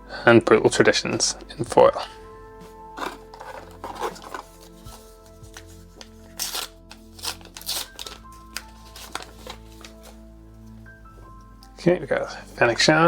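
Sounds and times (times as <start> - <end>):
background music: 0.0 - 13.0
cards sliding against each other: 3.0 - 10.2.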